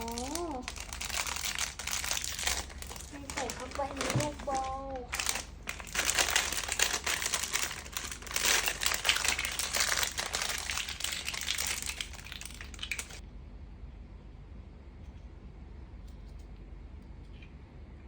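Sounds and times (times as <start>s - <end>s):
plastic packaging crinkling: 0.0s - 13.2s.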